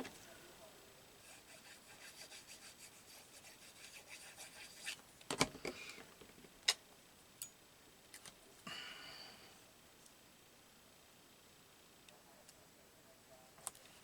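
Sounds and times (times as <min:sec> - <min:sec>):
rubbing strokes on paper: 0:01.1 - 0:05.0.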